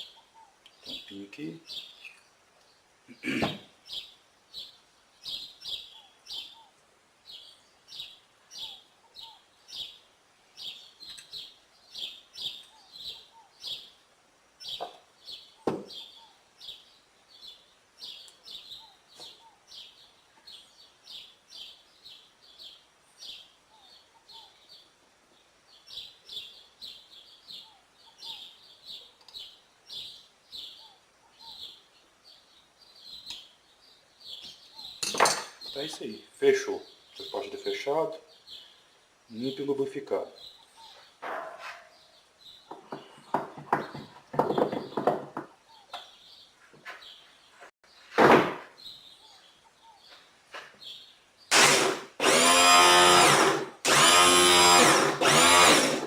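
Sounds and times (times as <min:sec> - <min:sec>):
bird chirping: 0:00.0 - 0:51.7
sharp knock: 0:48.2 - 0:48.7.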